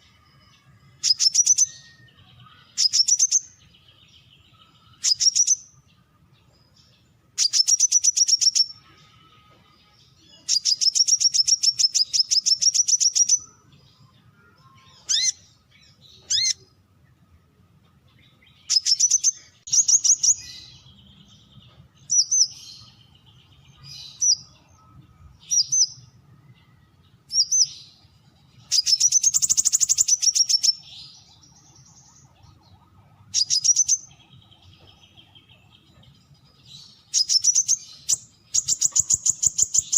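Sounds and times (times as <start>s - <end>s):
bird trills: 0.0s - 3.8s, 4.6s - 5.7s, 7.4s - 9.4s, 10.4s - 13.6s, 14.4s - 16.7s, 18.3s - 20.8s, 28.6s - 36.1s, 36.7s - 39.9s
bird chirps: 0.0s - 39.9s.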